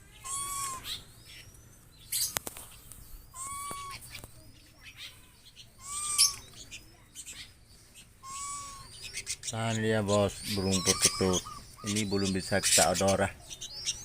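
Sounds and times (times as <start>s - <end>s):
faint high chirps: 0.0s - 14.0s
bird arching call with hiss: 8.2s - 9.0s.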